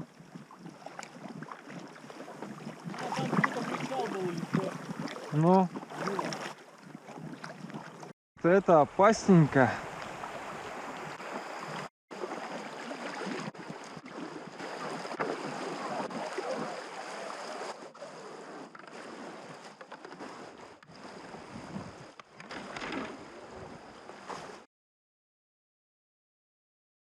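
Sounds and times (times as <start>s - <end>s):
river water rushing and splashing: 0.0s - 18.4s.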